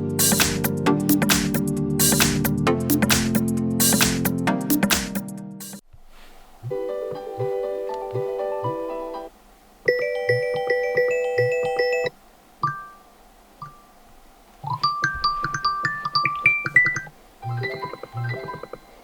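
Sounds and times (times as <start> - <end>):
electronic ringtone melodies: 9.9 - 13.9, 14.7 - 19.0.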